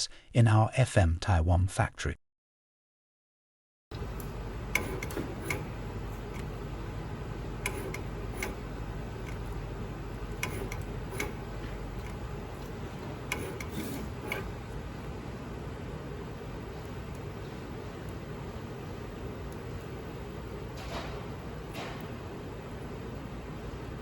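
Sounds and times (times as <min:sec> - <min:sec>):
machinery running: 0:03.9 - 0:24.0
light mechanical clicks: 0:10.4 - 0:11.4.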